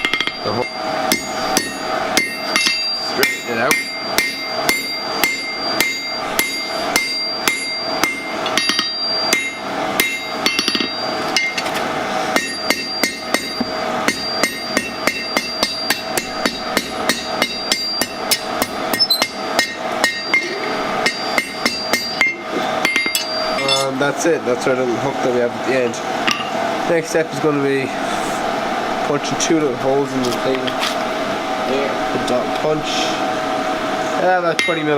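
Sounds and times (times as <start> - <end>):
hammer striking steel on anvil: 0.0 - 23.9, 34.6 - 34.9.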